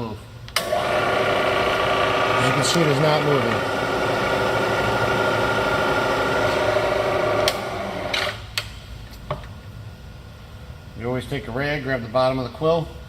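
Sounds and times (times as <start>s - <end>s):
milling machine running: 0.6s - 8.3s.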